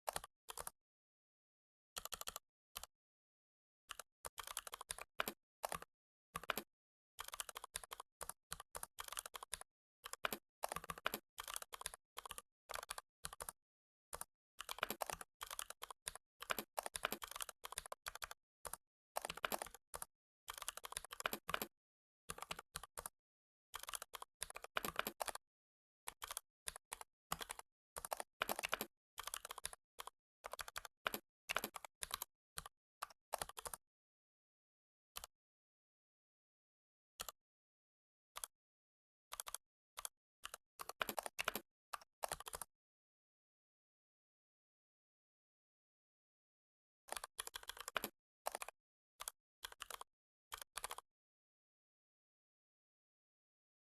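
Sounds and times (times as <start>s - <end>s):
keyboard typing: 4.4s - 13.6s, 14.6s - 18.3s, 19.2s - 21.7s, 23.8s - 25.4s, 26.1s - 29.8s, 33.3s - 33.8s, 40.4s - 41.6s, 49.6s - 50.1s.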